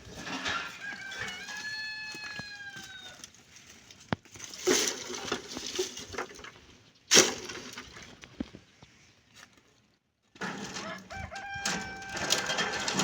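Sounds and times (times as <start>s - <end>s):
rooster crowing: 0.4s - 3.3s, 10.8s - 12.7s.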